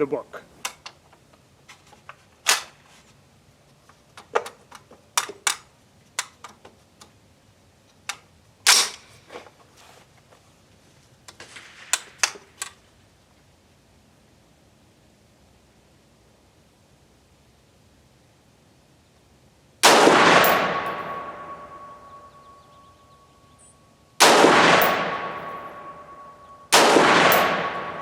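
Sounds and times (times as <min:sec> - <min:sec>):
rifle shots: 0:19.8 - 0:22.3, 0:24.2 - 0:28.0.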